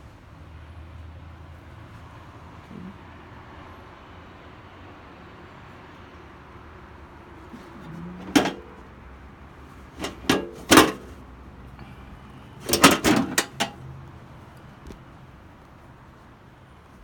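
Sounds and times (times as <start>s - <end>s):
hard objects knocking and clattering: 7.6s - 8.8s, 10.0s - 11.2s, 12.6s - 13.8s.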